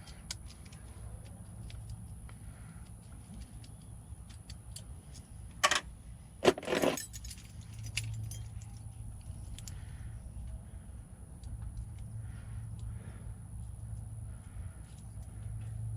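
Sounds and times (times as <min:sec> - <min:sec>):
small metal parts clinking: 0:04.7 - 0:09.7
keys jangling: 0:06.4 - 0:08.9.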